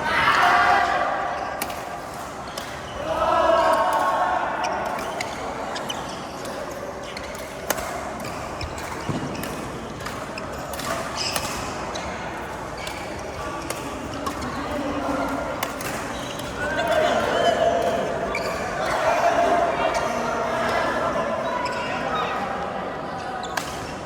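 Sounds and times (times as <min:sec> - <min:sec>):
rackets striking shuttlecock: 0:04.8 - 0:19.2.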